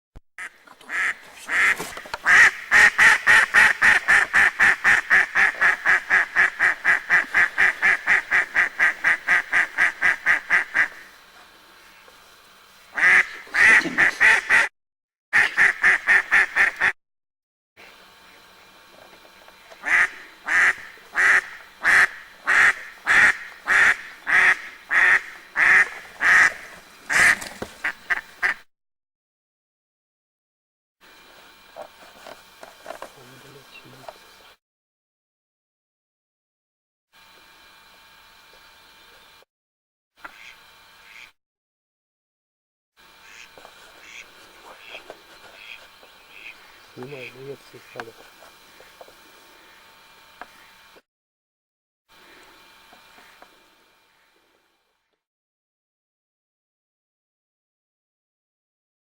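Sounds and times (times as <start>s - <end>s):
duck quacking: 0.4s - 11.1s, 13.0s - 14.7s, 15.4s - 17.0s, 19.8s - 28.6s, 40.2s - 41.3s, 43.2s - 48.2s.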